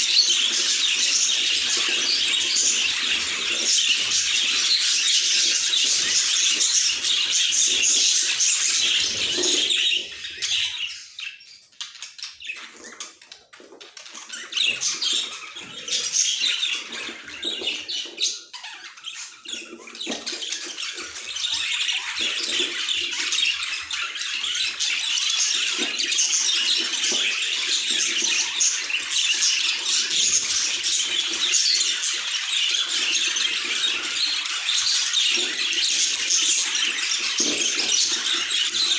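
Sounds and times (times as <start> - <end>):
budgies chattering and chirping: 0.0 - 38.9.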